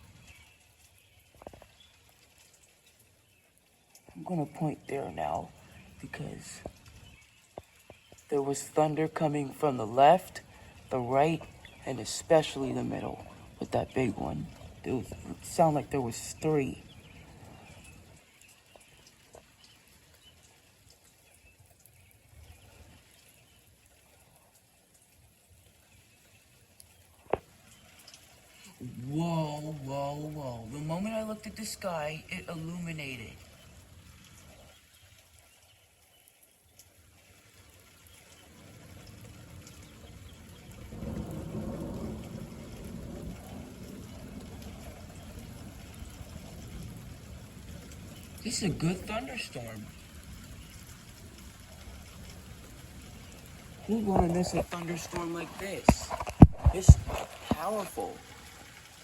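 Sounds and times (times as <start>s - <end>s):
light rain hiss: 0.0s - 59.0s
soft drips: 0.0s - 59.0s
thunder rumbling: 39.9s - 49.5s.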